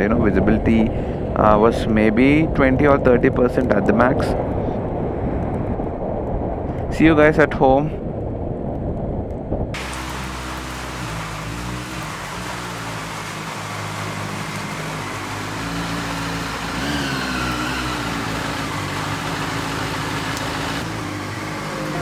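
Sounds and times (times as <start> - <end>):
wind and road noise: 0.0 - 22.0
motorcycle engine running: 9.8 - 22.0.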